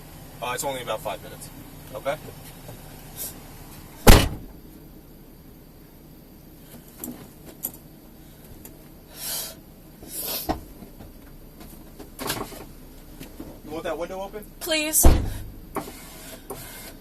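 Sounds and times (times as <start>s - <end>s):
loud thump: 4.0s - 4.6s, 15.0s - 15.8s.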